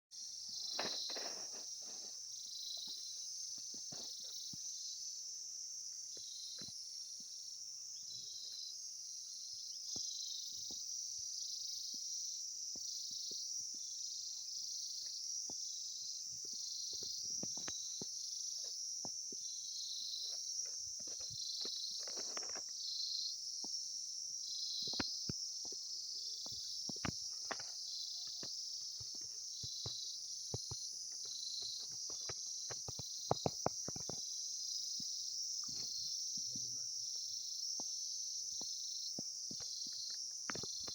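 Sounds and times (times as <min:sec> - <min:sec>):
insects shrilling: 0:00.5 - 0:03.2.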